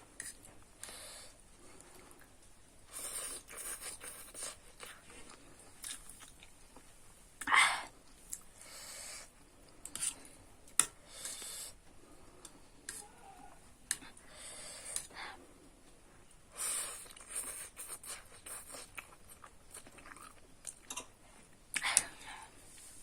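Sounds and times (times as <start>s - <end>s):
person chewing and slurping: 2.9s - 6.5s, 16.6s - 22.0s.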